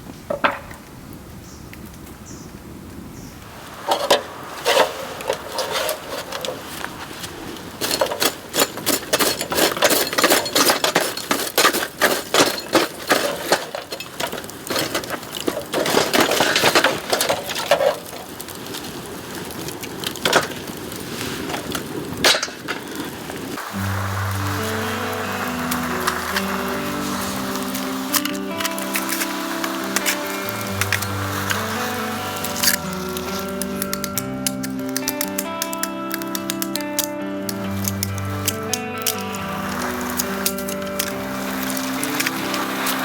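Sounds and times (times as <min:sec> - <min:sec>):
bamboo fire crackling and popping: 0:00.0 - 0:43.0
music: 0:23.6 - 0:43.0.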